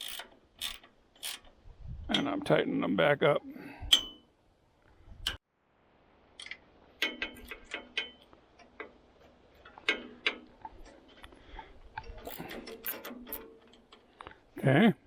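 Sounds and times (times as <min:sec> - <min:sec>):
metallic clicks of hand wrench: 0:00.0 - 0:01.5, 0:03.9 - 0:04.2, 0:12.0 - 0:14.3.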